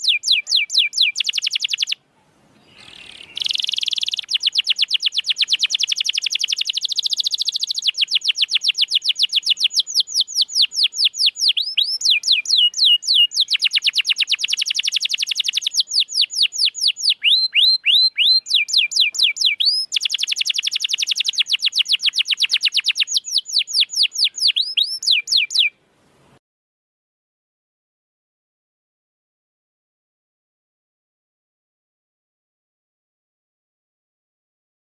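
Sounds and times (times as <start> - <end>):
canary singing trills: 0.0 - 2.0, 2.6 - 25.8
down-slurred whistles: 2.8 - 25.7.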